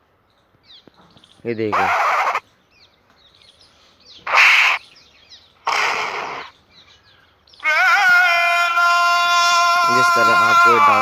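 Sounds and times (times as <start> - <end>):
short hissing bursts: 5.7 - 6.5.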